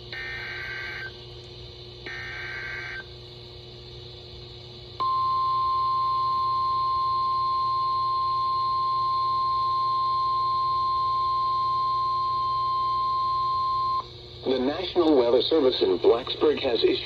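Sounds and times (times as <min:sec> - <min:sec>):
steady alarm beep tone: 0:00.1 - 0:01.2, 0:02.1 - 0:03.1, 0:05.0 - 0:14.1.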